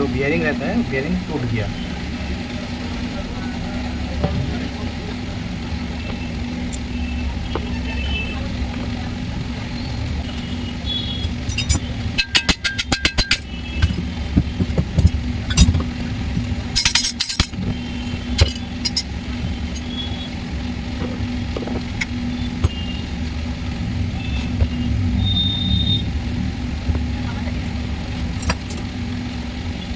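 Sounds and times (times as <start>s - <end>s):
steady low hum: 0.0s - 29.9s
metal tools clinking: 11.2s - 14.1s, 16.7s - 19.1s, 28.2s - 28.9s.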